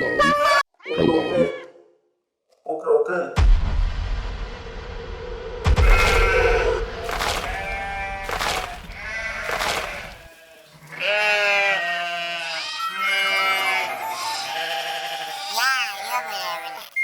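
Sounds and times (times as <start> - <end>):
low rumble: 3.4 - 9.5
livestock bleating: 5.8 - 17.0.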